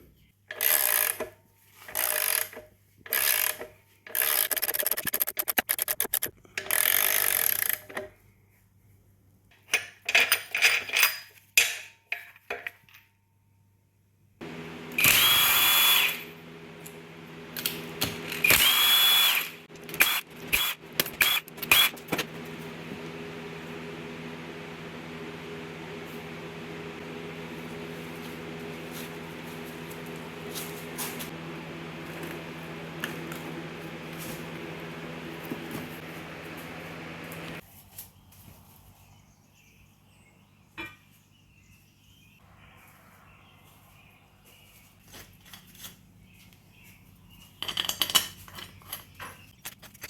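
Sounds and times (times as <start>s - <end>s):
steady hum: 14.4s - 37.6s
handheld power tool bursts: 14.9s - 16.4s, 17.6s - 22.3s.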